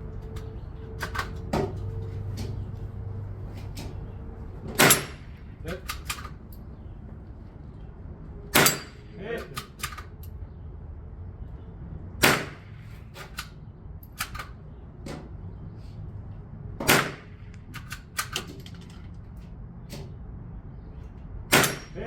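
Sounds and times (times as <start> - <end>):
gunshot cracks: 16.8 - 17.4.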